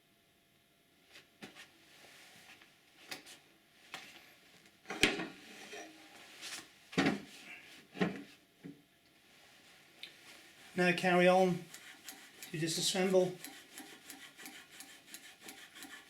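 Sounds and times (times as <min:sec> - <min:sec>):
metal scraping: 0:04.9 - 0:06.2.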